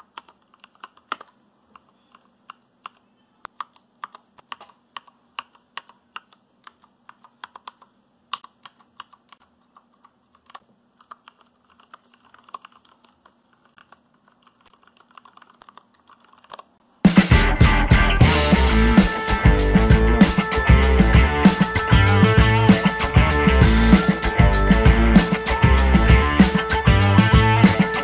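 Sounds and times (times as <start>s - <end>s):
mechanical keyboard typing: 0.0s - 16.8s.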